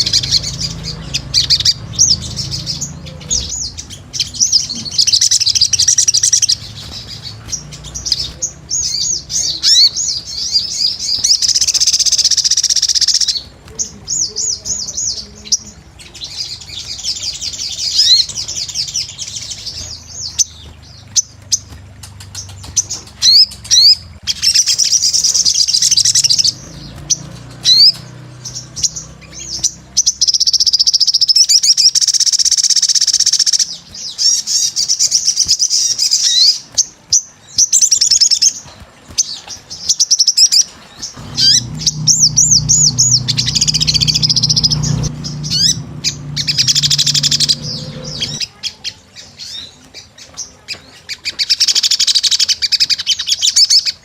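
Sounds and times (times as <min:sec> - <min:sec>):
sunbird singing high chirps: 0:00.0 - 0:13.5, 0:22.4 - 0:36.6, 0:40.0 - 0:48.6.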